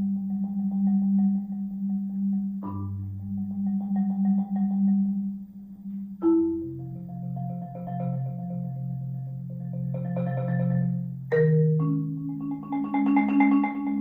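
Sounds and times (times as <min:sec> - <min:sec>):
marimba played with mallets: 0:00.0 - 0:14.0.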